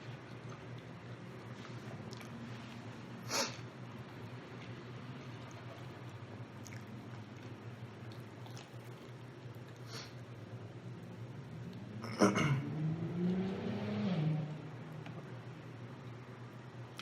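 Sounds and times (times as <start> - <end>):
low hum: 0.0 - 17.0
person chewing: 0.2 - 3.6, 5.4 - 10.2.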